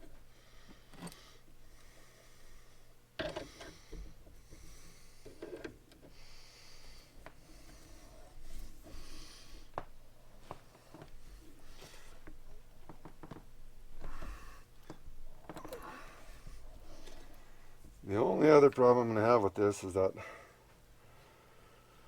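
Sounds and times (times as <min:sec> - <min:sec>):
rustles and scrapes of tools: 0:00.0 - 0:02.2, 0:03.2 - 0:18.1.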